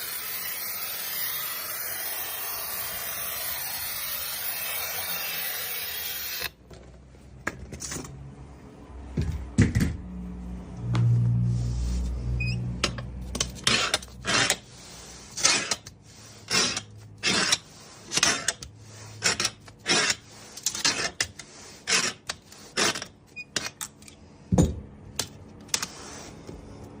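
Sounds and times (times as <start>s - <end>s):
harsh screeching or scraping: 0.0s - 6.6s, 13.4s - 23.2s.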